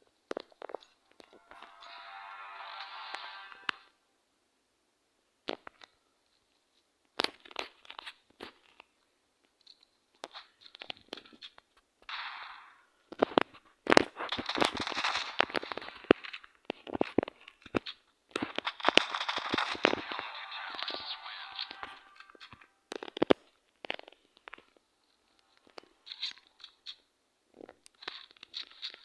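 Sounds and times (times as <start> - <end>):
crackling rustling noise: 0.0 - 3.9, 5.4 - 29.0
sharp clicks: 18.4 - 23.3.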